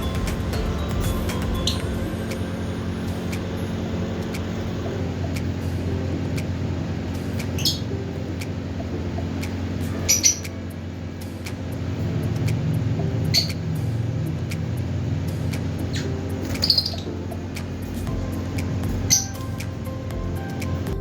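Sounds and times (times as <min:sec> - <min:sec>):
steady low hum: 0:00.0 - 0:21.0
lovebirds chirping: 0:07.4 - 0:08.0, 0:10.0 - 0:10.7, 0:15.7 - 0:17.3, 0:18.4 - 0:19.8.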